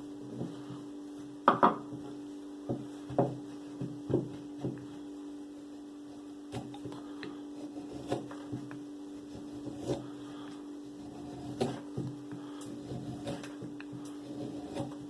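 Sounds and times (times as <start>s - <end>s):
steady low hum: 0.0s - 15.0s
carving tool cutting wood: 6.5s - 10.3s, 10.9s - 15.0s.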